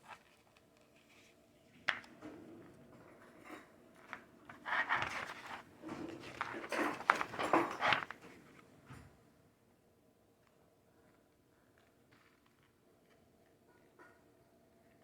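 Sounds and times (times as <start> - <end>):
paper crinkles: 0.0 - 2.1, 4.5 - 8.3
paper pages rustling: 0.0 - 2.1, 4.0 - 8.6.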